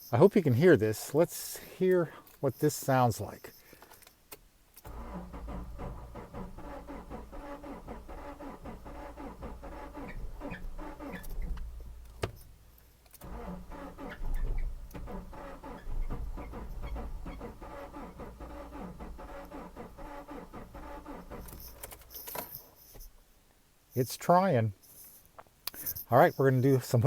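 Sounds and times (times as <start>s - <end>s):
car engine cranking: 4.8s - 22.9s.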